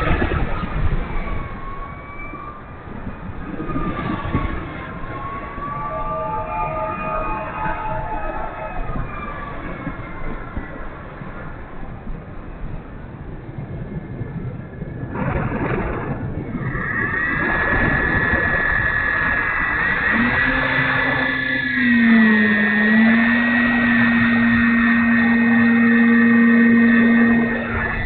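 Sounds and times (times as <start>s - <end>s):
low hum: 0.0s - 28.0s
electric model airplane motor whine: 19.4s - 28.0s.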